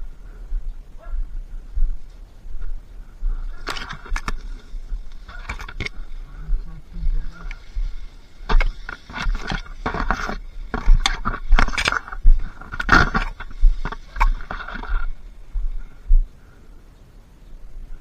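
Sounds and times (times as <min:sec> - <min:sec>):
dull low thumps: 0:00.0 - 0:16.4
rustling and scraping: 0:01.9 - 0:16.0.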